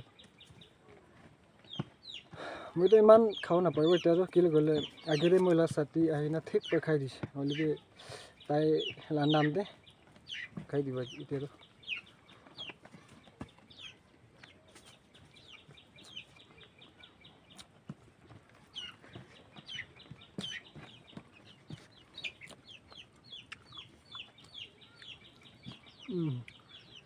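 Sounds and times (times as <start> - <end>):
chickens peeping and clucking: 0.0 - 27.0.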